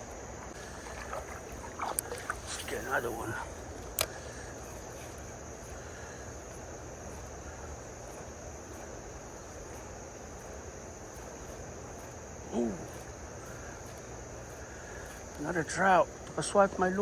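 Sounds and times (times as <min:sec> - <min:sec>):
low rush of water or wind: 0:00.0 - 0:04.1
insects chorus: 0:00.0 - 0:17.0.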